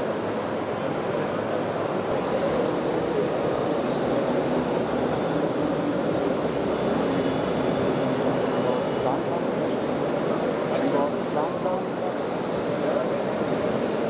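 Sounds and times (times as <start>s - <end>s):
faint high whine: 2.1s - 14.0s
model engine sound drone: 2.1s - 14.0s.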